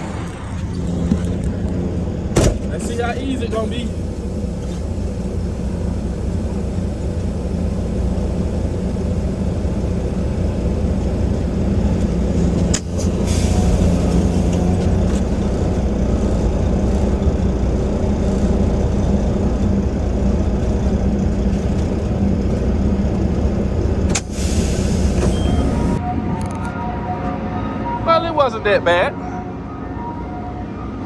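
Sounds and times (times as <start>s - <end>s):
diesel truck engine running: 0.0s - 26.0s
short air hiss: 24.2s - 25.4s.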